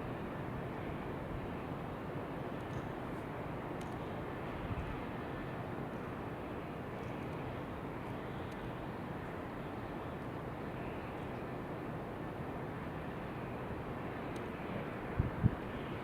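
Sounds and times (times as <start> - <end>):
faint high clicks: 2.6 - 3.0.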